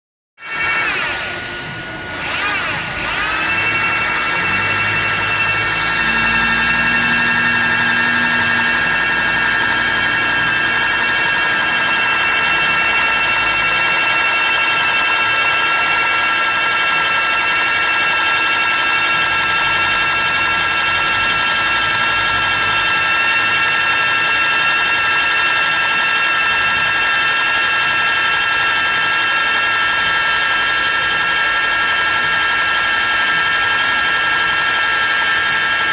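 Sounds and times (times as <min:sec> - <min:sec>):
welding machine whine: 0:00.4 - 0:35.9
low hum: 0:01.1 - 0:14.2.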